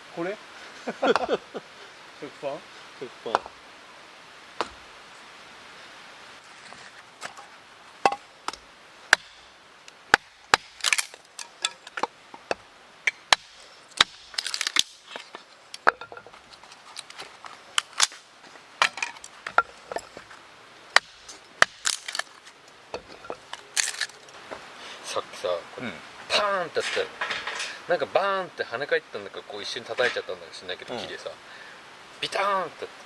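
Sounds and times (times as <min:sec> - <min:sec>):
axe splitting firewood: 0:08.0 - 0:24.7.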